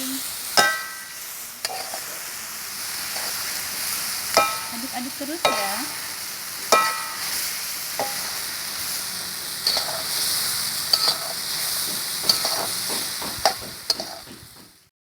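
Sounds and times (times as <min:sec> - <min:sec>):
prawns sizzling in sauce: 0:00.0 - 0:14.9
spatula scraping and clinking pan: 0:00.6 - 0:02.3, 0:03.0 - 0:03.6, 0:04.3 - 0:06.0, 0:06.7 - 0:08.5, 0:09.6 - 0:14.5.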